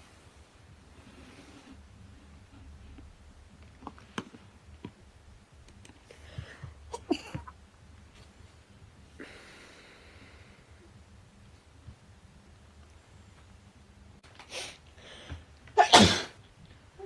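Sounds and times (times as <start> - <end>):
breath: 6.1 - 6.8, 9.2 - 10.8, 14.5 - 15.5
woman sneezing: 15.8 - 16.4.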